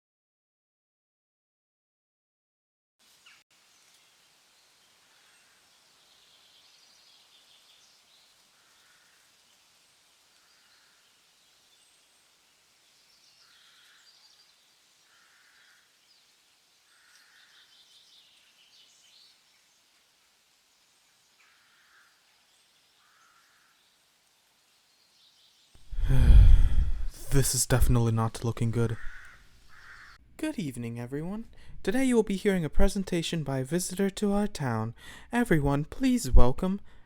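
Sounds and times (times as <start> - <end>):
birds chirping: 3.3 - 20.0, 20.6 - 30.2
short hoarse bird calls: 15.0 - 16.0, 29.0 - 30.2.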